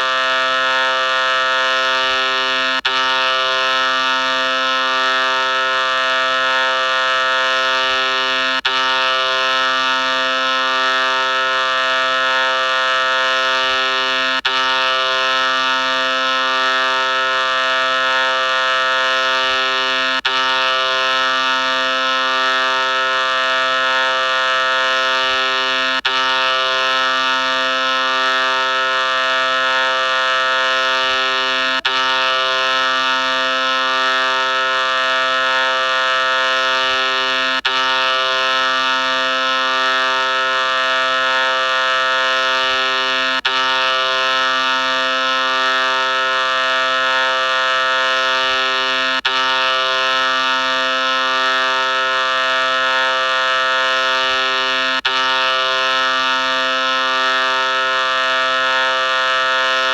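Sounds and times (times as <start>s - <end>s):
steady horn-like tone: 0.0s - 59.9s.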